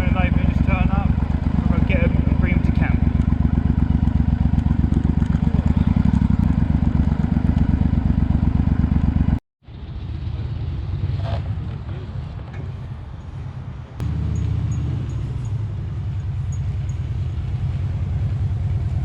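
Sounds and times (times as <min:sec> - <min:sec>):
motorcycle engine pulsing: 0:00.0 - 0:09.4, 0:14.0 - 0:19.0.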